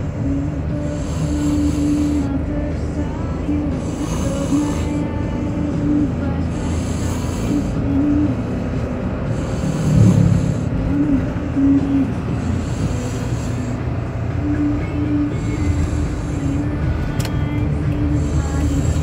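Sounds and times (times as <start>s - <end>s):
low rumble: 0.0s - 19.0s
child snoring: 0.4s - 2.4s, 3.8s - 5.2s, 6.4s - 7.9s, 9.3s - 10.9s, 12.1s - 13.8s, 15.3s - 16.7s, 18.1s - 19.0s.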